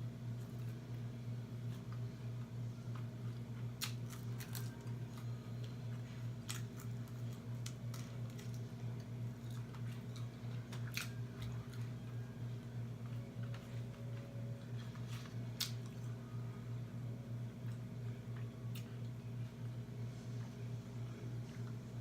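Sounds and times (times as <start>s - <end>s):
low hum: 0.0s - 22.0s
chewing food: 2.9s - 12.3s.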